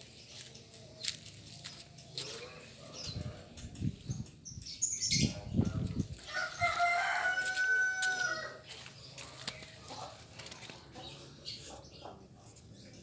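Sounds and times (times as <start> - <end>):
rooster crowing: 6.2 - 8.6.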